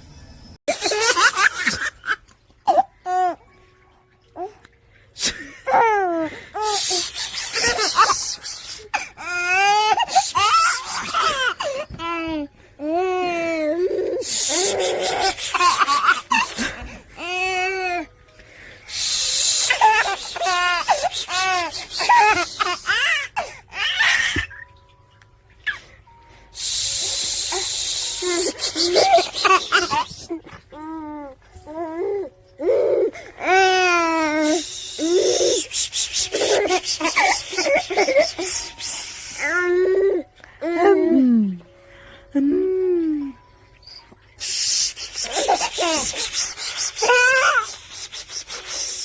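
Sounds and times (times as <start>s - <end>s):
baby laughing: 0.7s - 3.4s, 5.3s - 18.0s, 19.6s - 24.6s, 28.2s - 31.2s, 32.6s - 41.2s, 44.4s - 49.0s
loud steady hiss: 18.9s - 22.7s, 26.6s - 30.3s.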